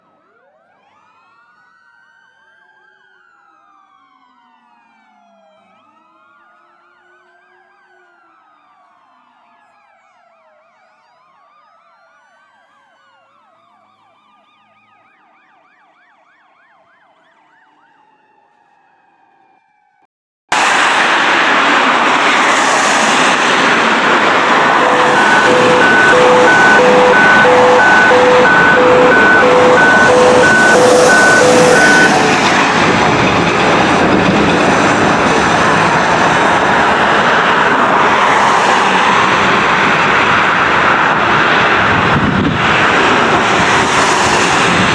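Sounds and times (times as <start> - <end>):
distant fire engine siren: 0.0 - 44.9
vehicle noise rushing: 20.5 - 44.9
rapidly pulsing tone: 24.7 - 32.5.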